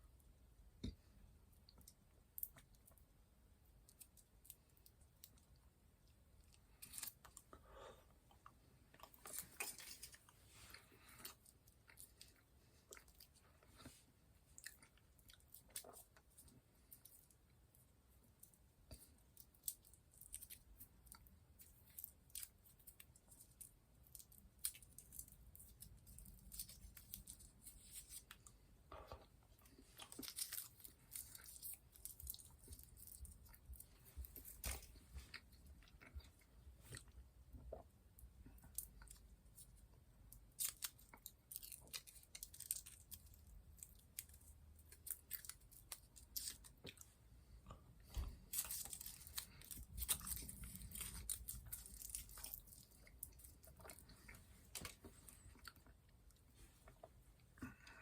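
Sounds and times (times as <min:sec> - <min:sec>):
chewing chocolate: 0:40.3 - 0:58.0.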